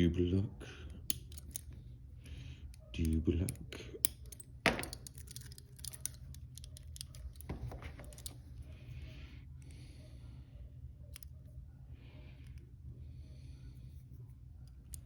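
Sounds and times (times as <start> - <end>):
handcuff lock clicking and scraping: 0.9 - 8.8, 11.1 - 11.4, 14.6 - 15.0
person breathing: 8.7 - 10.6, 11.8 - 14.2.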